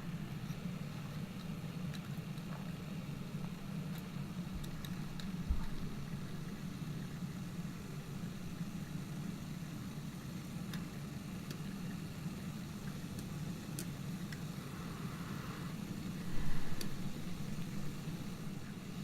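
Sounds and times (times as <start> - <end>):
steam kettle humming: 0.0 - 19.0
faint clicks: 16.4 - 18.0.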